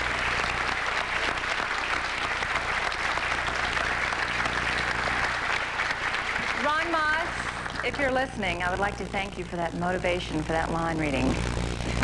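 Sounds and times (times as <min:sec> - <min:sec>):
audience applauding: 0:00.0 - 0:08.4
low electrical buzz: 0:00.0 - 0:12.0.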